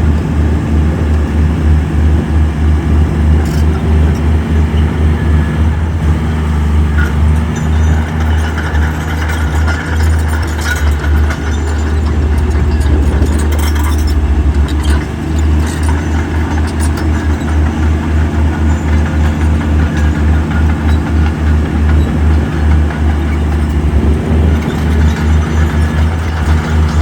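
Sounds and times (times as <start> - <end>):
diesel engine rumbling: 0.0 - 27.0
metallic clanks: 6.9 - 27.0.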